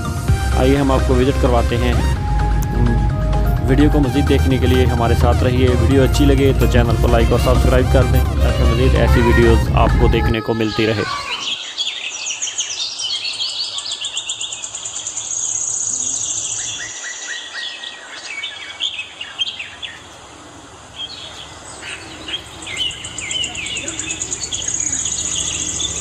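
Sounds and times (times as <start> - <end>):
small birds chirping and trilling: 10.4 - 26.0.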